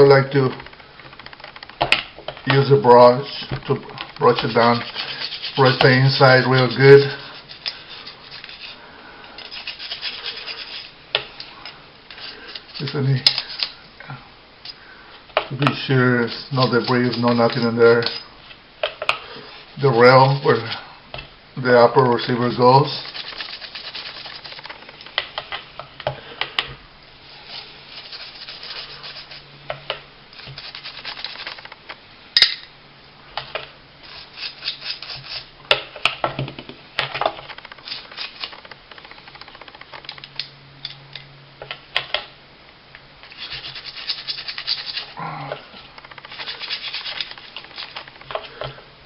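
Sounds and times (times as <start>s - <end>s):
sharp clicks: 0.5s - 2.0s, 38.5s - 40.5s
brush scrubbing metal: 4.2s - 8.8s, 9.4s - 11.0s, 12.1s - 13.8s, 15.7s - 18.2s, 19.5s - 20.8s, 22.5s - 24.8s, 27.2s - 29.6s, 30.4s - 31.7s, 34.0s - 35.5s, 43.2s - 45.2s, 46.2s - 48.1s.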